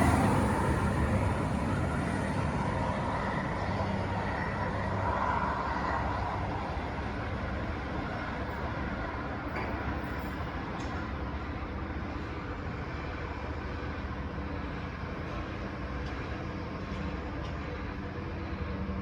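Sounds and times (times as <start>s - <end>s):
diesel train engine: 0.0s - 19.0s
train rolling noise: 0.0s - 19.0s.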